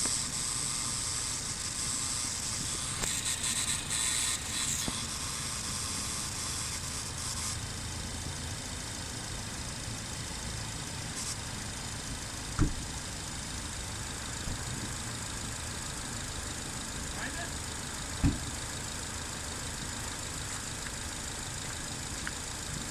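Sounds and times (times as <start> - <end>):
hiss: 0.0 - 7.6, 11.0 - 22.9
car engine idling: 0.0 - 22.9
sharp thump: 12.6 - 12.9, 18.2 - 18.5.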